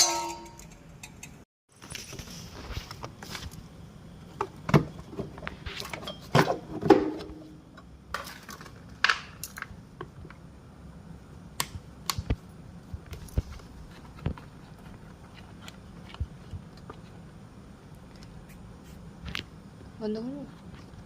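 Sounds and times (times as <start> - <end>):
metal tools clinking: 0.0 - 1.4.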